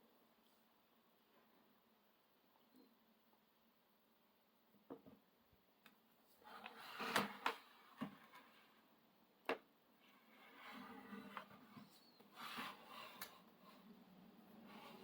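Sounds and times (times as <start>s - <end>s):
laptop scraping on desk: 6.5s - 8.4s, 10.4s - 13.2s.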